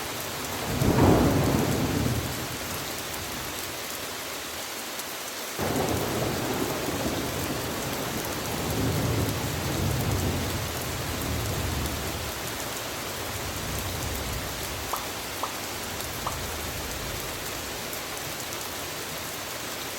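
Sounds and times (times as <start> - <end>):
steady rain falling: 0.0 - 19.9
low rumble of thunder: 0.6 - 3.5, 5.6 - 17.7
small ticks: 14.9 - 16.5.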